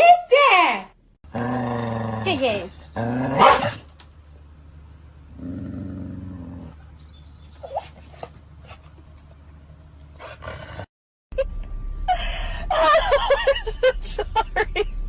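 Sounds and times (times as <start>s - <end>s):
dog grumbling: 1.3s - 3.8s, 5.3s - 7.0s.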